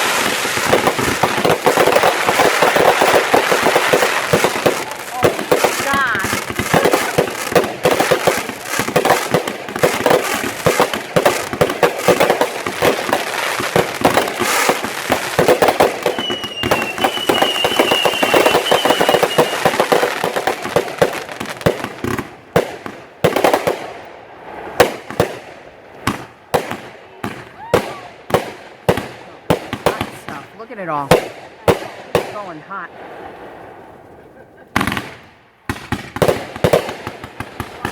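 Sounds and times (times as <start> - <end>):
firework shell bursts and crackling: 0.0 - 33.8
high firework whistle: 15.8 - 20.1.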